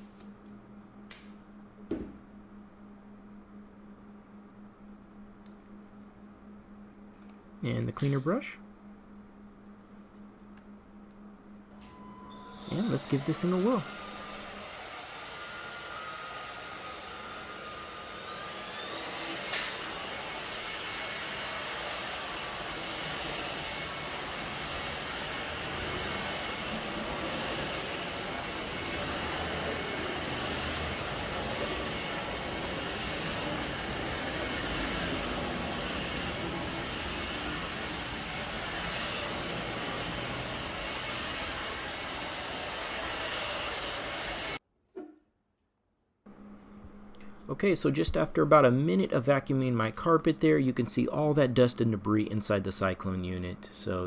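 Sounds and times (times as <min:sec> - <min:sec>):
stick vacuum whirring: 0:12.6 - 0:44.6.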